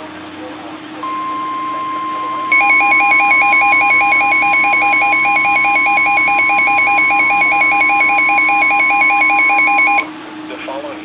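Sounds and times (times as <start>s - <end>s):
steady high alarm tone: 1.0s - 10.1s
rapidly warbling electronic beep: 1.6s - 10.1s.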